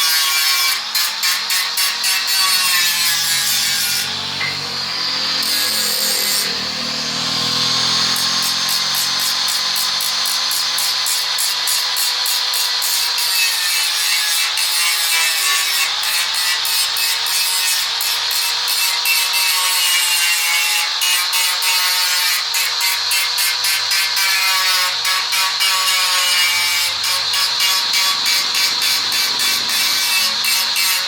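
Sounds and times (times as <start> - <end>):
hand file rasping on steel: 0.0 - 4.1, 8.2 - 31.0
steady whine: 25.9 - 31.0.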